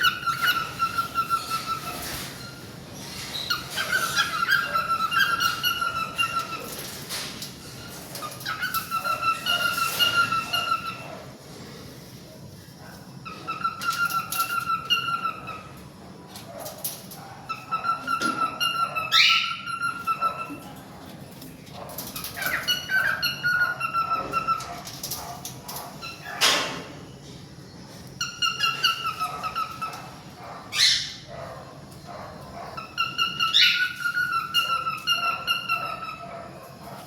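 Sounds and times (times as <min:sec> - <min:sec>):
cockatiel harsh calls: 0:22.2 - 0:24.7, 0:28.2 - 0:31.3, 0:32.8 - 0:36.3.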